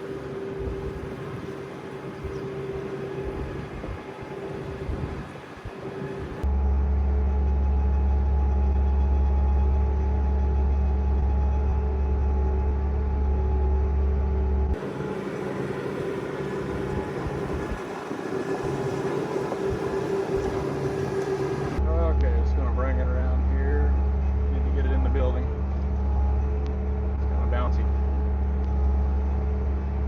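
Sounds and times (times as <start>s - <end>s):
thin rough engine sound: 0.0s - 6.4s, 14.8s - 30.0s
diesel engine running under load: 0.0s - 30.0s.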